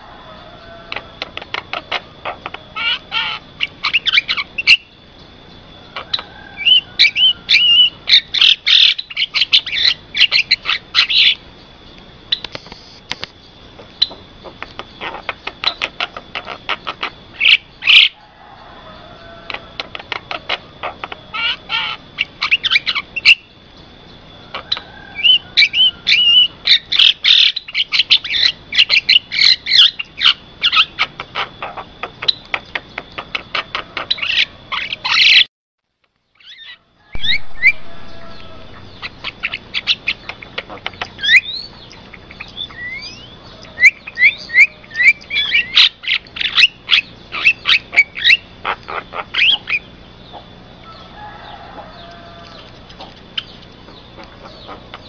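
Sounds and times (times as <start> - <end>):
bird chirps and whistles: 1.8 - 5.0, 6.1 - 11.4, 20.4 - 23.6, 24.6 - 32.6, 36.4 - 51.0.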